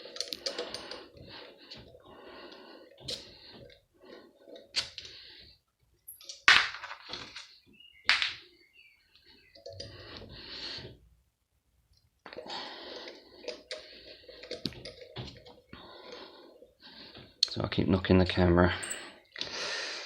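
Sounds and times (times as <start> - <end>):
rattling with small clicks: 0.0 - 3.8
metal parts clanking and scraping: 13.0 - 15.7, 18.8 - 19.2.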